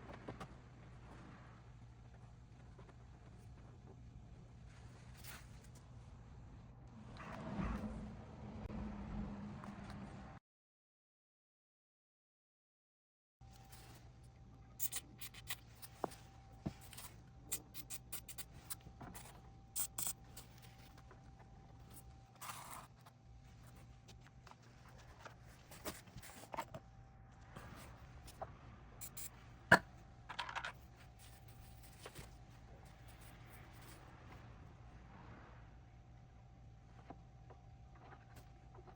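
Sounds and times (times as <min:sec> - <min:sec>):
faint steady hum: 0:00.0 - 0:10.4, 0:13.4 - 0:38.9
small parts clicking and scraping: 0:29.0 - 0:32.4.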